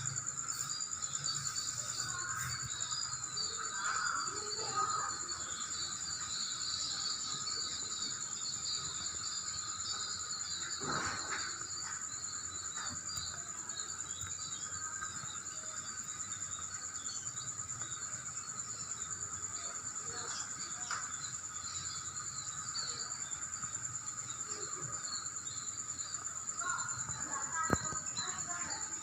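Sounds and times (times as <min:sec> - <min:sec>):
insects trilling: 0:00.0 - 0:29.0
irregular chirping: 0:00.0 - 0:29.0.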